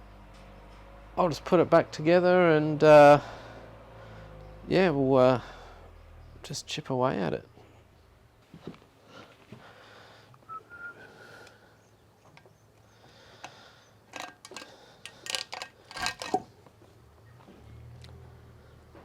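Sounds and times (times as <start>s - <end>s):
metal parts clinking and knocking: 14.1s - 16.5s.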